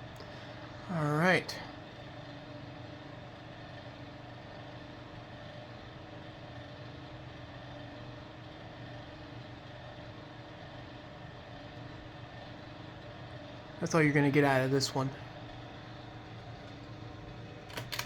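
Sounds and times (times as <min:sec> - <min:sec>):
ceiling fan motor hum: 0:00.0 - 0:18.0.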